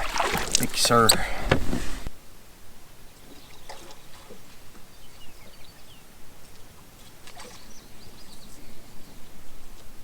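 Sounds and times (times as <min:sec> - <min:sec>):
small birds chirping: 0:03.1 - 0:09.5.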